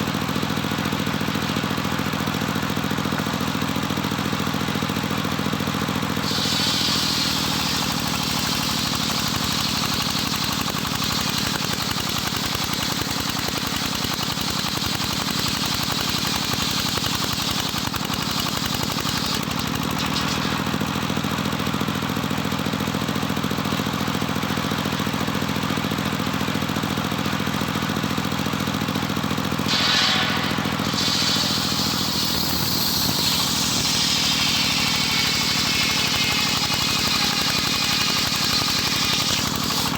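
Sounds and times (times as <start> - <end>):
steady motor drone: 6.0 - 19.5, 29.2 - 39.9
saw blade ripping through timber: 6.2 - 21.0, 29.7 - 39.9.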